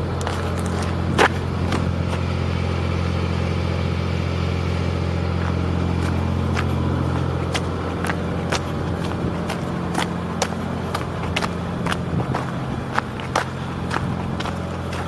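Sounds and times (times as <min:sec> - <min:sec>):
boat engine idling: 0:00.0 - 0:15.0
sharp ticks: 0:05.4 - 0:15.0.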